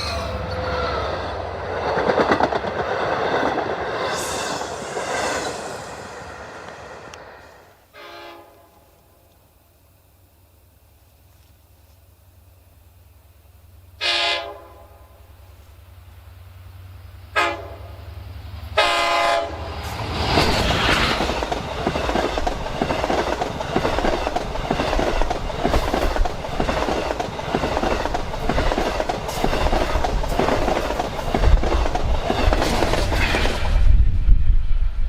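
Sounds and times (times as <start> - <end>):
train passing rumble: 0.0 - 35.0
locomotive air horn blasts: 7.9 - 8.9, 14.0 - 15.2, 17.3 - 18.0, 18.8 - 19.6
wheels clicking over rails: 20.4 - 33.8.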